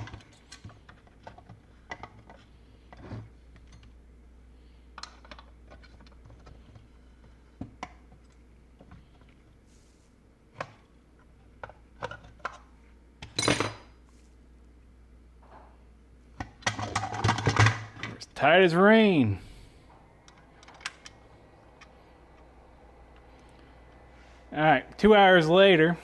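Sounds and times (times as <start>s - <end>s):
metal tools clicking and clinking: 13.2s - 13.9s.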